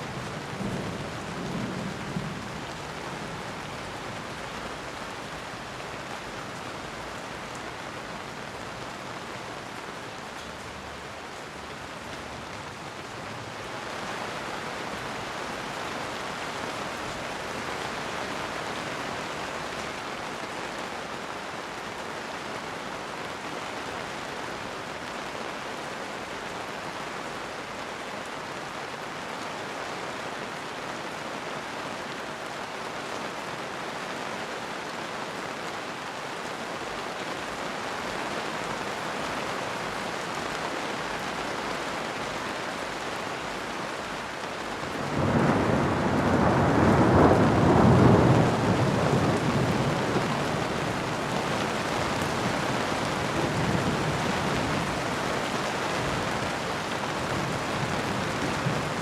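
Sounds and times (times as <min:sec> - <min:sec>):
steady rainfall: 0:00.0 - 0:59.0
thunder rumbling: 0:44.9 - 0:59.0.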